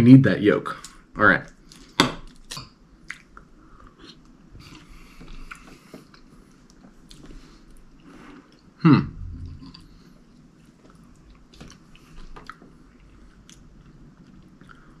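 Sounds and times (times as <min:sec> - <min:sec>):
person chewing food: 0:01.6 - 0:15.0
short falling vocal sound: 0:08.8 - 0:10.0.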